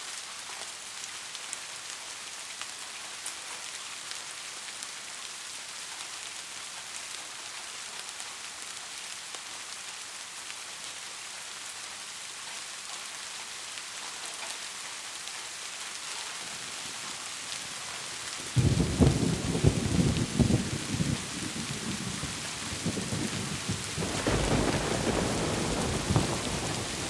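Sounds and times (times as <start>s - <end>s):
heavy rain: 0.0s - 27.0s
thunder crack and rumble: 18.6s - 27.0s.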